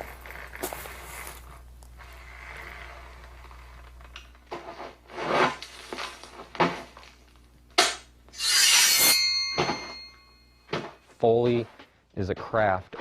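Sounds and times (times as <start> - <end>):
props rubbing and scraping: 0.0 - 7.0
ringing tone: 8.4 - 11.0.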